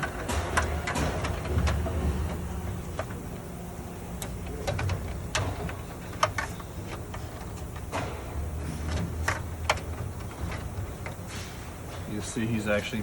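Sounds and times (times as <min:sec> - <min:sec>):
steady low hum: 0:00.0 - 0:13.0
clicks and knocks of parts handled: 0:04.2 - 0:12.1.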